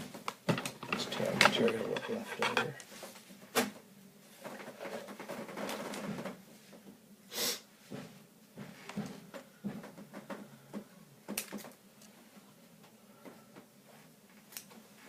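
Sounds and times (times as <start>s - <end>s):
plastic pieces clicking and rustling: 0.5s - 2.8s
short sharp breathy hiss: 7.3s - 7.7s.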